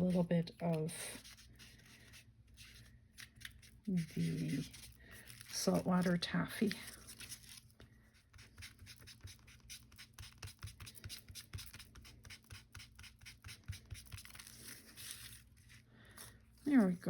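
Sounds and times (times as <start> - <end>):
scratchy ink applicator strokes: 8.3 - 15.5.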